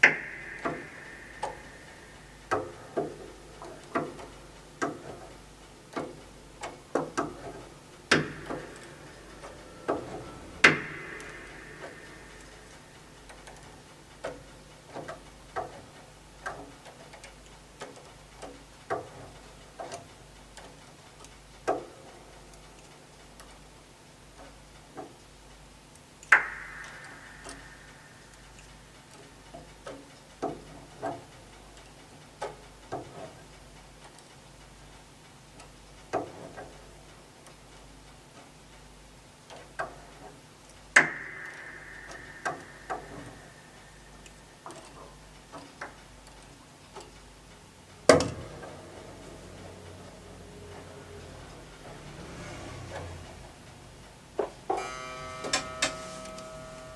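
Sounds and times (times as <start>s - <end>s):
sharp ringing strikes: 0.0s - 3.7s, 7.7s - 14.1s, 26.3s - 29.4s, 41.0s - 45.3s, 54.7s - 56.9s
small clicks and taps on piano parts: 0.0s - 53.2s.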